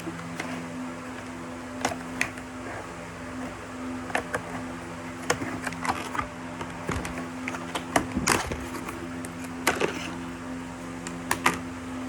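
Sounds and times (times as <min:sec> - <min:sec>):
steady low hum: 0:00.0 - 0:12.0
plastic case clicking and rattling: 0:05.2 - 0:10.1.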